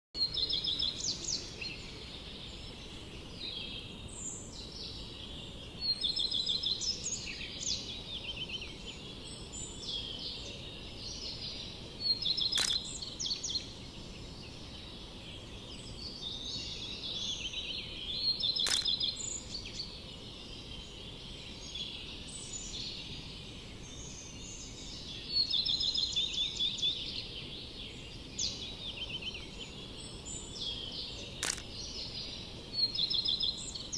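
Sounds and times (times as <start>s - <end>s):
songbirds chirping trills: 0.2s - 33.9s
sharp click: 12.6s - 12.9s, 18.6s - 19.0s, 31.4s - 31.7s.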